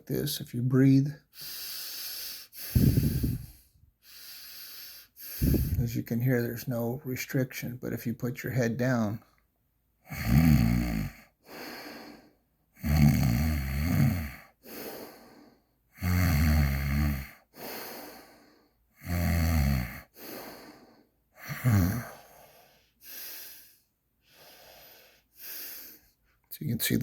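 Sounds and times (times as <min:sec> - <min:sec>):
quiet breath: 0:01.2 - 0:06.0, 0:11.1 - 0:12.5, 0:14.4 - 0:15.8, 0:17.2 - 0:18.9, 0:19.9 - 0:26.5
man breathing with snore-like rasp: 0:01.3 - 0:05.9, 0:10.1 - 0:26.2.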